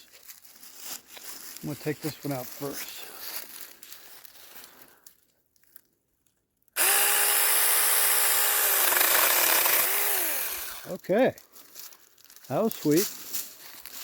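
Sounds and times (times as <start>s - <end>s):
chain sawing through wood: 6.8s - 11.0s
electric chainsaw whining: 6.8s - 11.0s.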